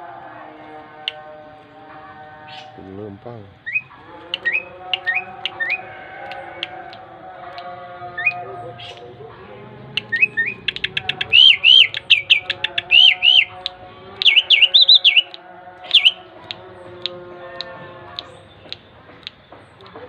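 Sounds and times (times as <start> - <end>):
starling singing clicks and whistles: 0.7 - 1.4, 3.6 - 9.2, 9.9 - 20.0.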